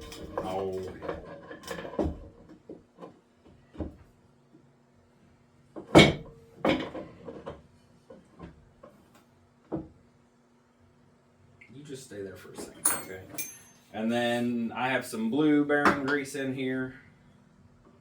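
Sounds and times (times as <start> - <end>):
pipe wrench clanking on metal: 12.6 - 13.9.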